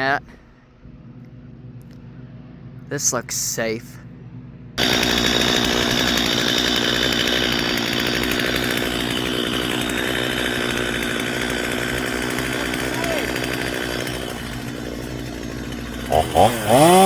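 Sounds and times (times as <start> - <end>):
chainsaw running: 4.8 - 17.0.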